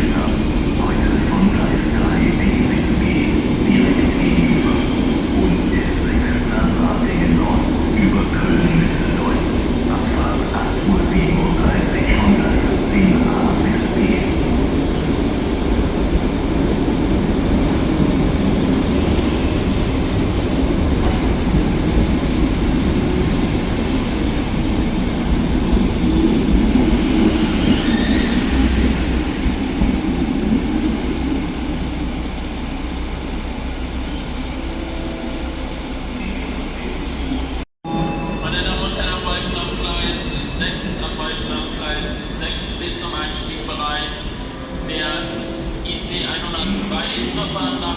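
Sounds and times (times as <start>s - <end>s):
train wheels rumbling on rails: 0.0s - 37.6s
train wheel squeal: 3.9s - 6.2s, 26.8s - 29.4s, 36.2s - 43.0s.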